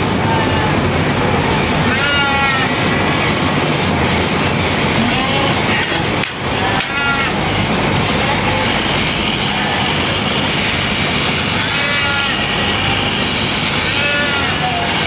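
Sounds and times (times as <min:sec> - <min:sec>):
electric clippers running: 0:08.0 - 0:15.0.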